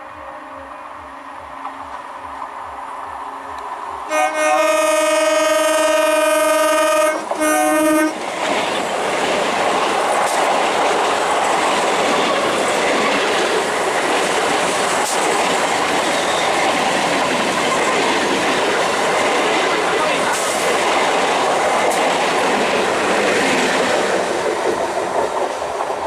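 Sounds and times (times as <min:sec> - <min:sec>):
train horn blasts: 0:00.0 - 0:08.2
train rushing past: 0:00.0 - 0:26.0.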